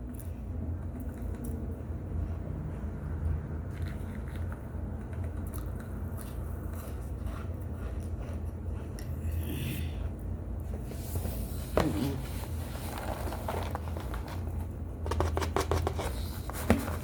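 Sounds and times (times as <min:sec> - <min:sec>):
chewing and crunching: 0:00.0 - 0:10.7
steady low hum: 0:00.0 - 0:17.0
soft scraping and squishing: 0:00.2 - 0:09.4, 0:10.0 - 0:17.0.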